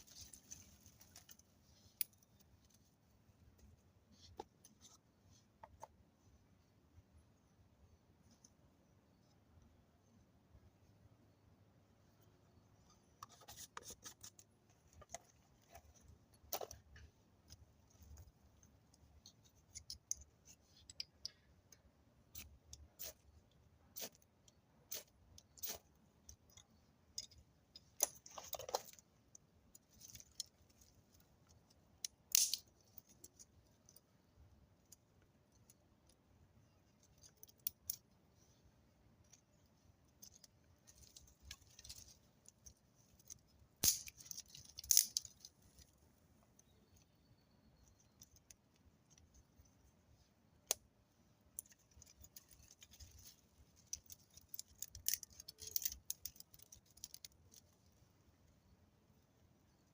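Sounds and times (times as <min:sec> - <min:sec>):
sharp clicks and light crackles: 0:51.6 - 0:57.7.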